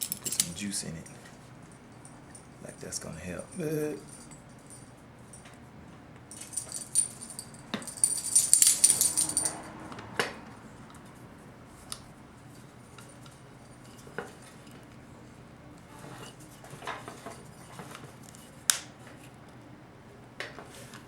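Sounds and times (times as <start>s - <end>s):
metal parts clinking and rattling: 0.0s - 0.6s, 6.3s - 9.7s.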